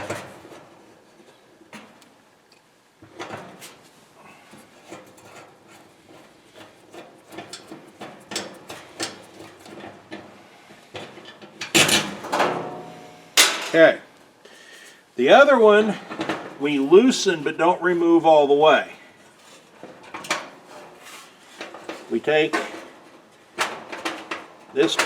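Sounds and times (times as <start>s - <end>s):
hand tool clicking and scraping on metal: 4.5s - 10.3s.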